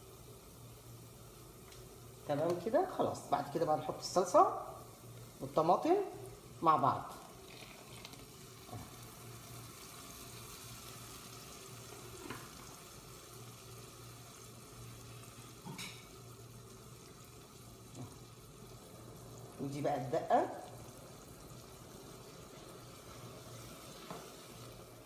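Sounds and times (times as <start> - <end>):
onions sizzling in oil: 0.0 - 25.0.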